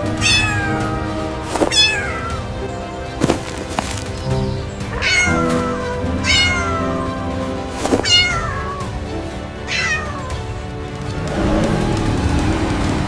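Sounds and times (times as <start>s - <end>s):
cat meowing: 0.0s - 2.7s, 4.9s - 7.2s, 8.0s - 8.8s, 9.7s - 10.4s
background music: 0.0s - 13.0s.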